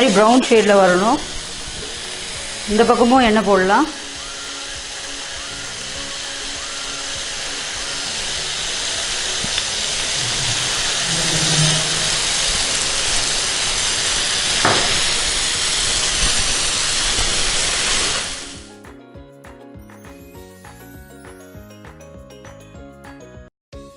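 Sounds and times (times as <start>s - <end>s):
soft background music: 0.0s - 13.2s
skewers sizzling on a grill pan: 0.0s - 18.7s.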